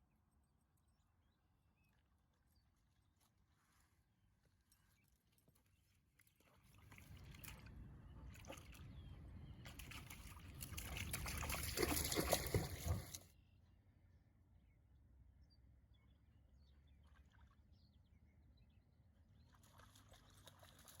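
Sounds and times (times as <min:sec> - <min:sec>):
water sloshing and splashing: 0:06.2 - 0:13.3, 0:19.6 - 0:21.0.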